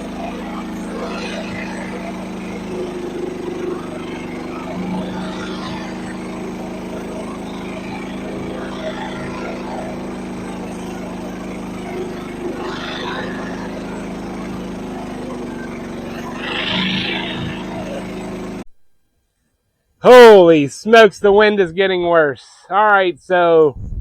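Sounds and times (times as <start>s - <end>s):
small gasoline engine running: 0.0s - 18.6s.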